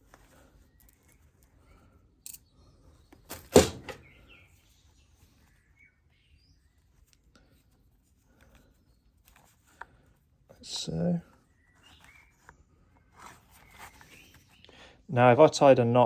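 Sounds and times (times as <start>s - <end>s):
faint rustling: 2.6s - 14.7s.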